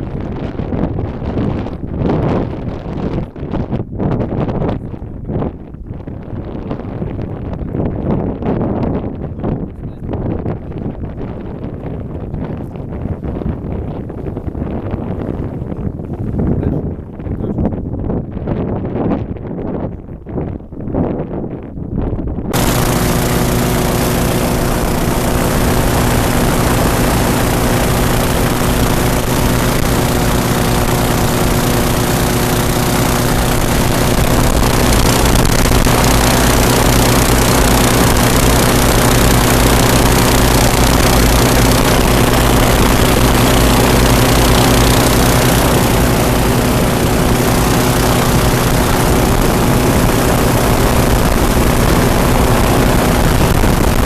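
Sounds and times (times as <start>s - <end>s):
airboat engines and propellers running: 22.5s - 54.0s.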